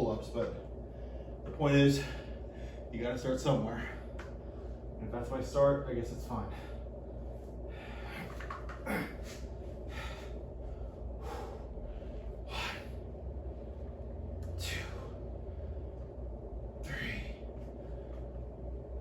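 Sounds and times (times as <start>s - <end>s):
low hum: 0.0s - 19.0s
man breathing hard: 6.4s - 16.1s, 16.7s - 18.4s
man exhaling forcefully: 12.5s - 13.0s, 14.6s - 15.2s.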